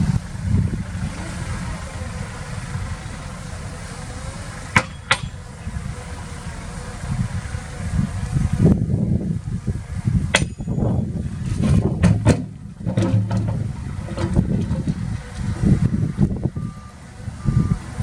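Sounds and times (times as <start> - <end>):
diesel machinery rumbling: 0.0 - 18.0
sharp knocks: 11.6 - 15.0.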